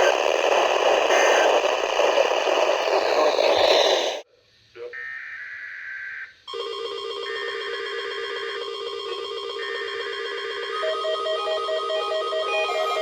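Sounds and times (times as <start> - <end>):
warbling data bursts: 0.0 - 4.2
steady beeping alarm: 6.5 - 13.0.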